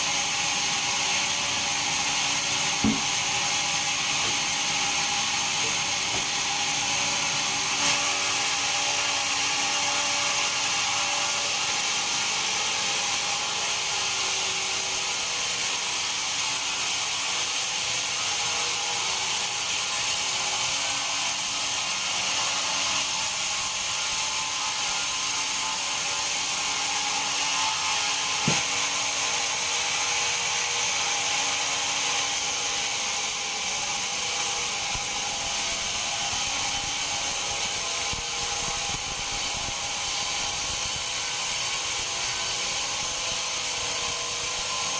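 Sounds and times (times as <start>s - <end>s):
band sawmill running: 0.0s - 44.9s
sharp knock: 2.8s - 3.1s, 28.4s - 28.7s.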